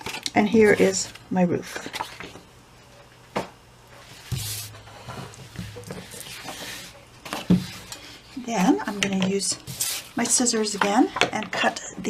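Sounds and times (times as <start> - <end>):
cardstock rustling: 4.2 - 7.9.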